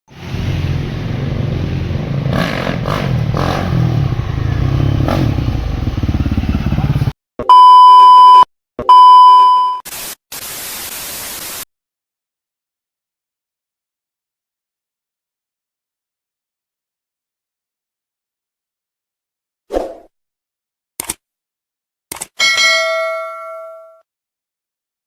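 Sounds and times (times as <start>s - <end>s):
motorcycle engine running: 0.1s - 7.2s
bursts of hiss: 9.9s - 11.6s.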